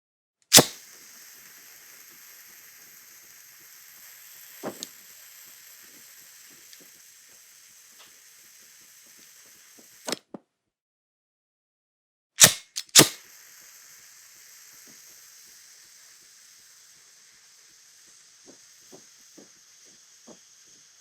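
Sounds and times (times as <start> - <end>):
lighter ignition click: 0.5 - 8.3, 12.4 - 16.4
gas flame hissing: 0.5 - 10.2, 12.4 - 21.0
valve clicks: 0.5 - 10.2, 12.4 - 21.0.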